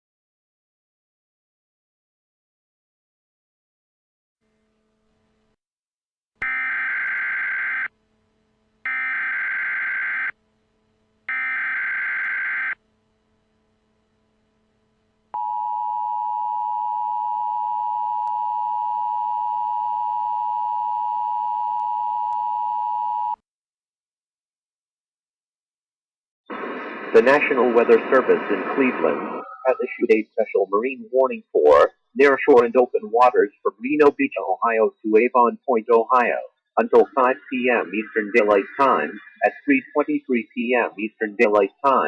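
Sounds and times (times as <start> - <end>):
steady attention tone: 26.5 - 42.0.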